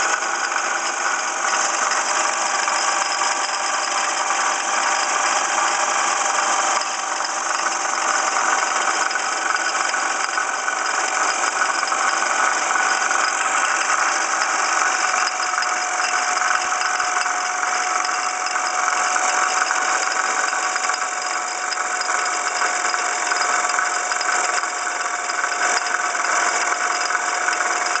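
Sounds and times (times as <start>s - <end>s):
engine rattle: 0.0s - 28.0s.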